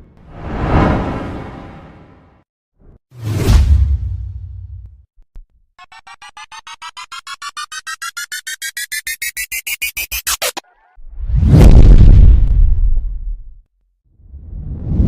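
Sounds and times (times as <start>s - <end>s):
rising electronic beeps: 5.8s - 11.0s.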